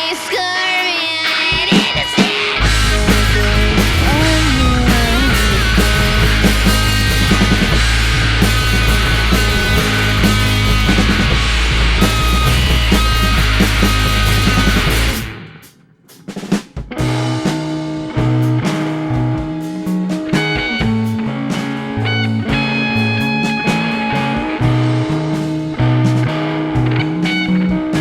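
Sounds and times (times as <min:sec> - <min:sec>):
electric guitar: 0:00.0 - 0:15.6, 0:16.8 - 0:28.0
bass guitar line: 0:02.6 - 0:15.7, 0:16.9 - 0:28.0
drum hits: 0:02.6 - 0:19.6.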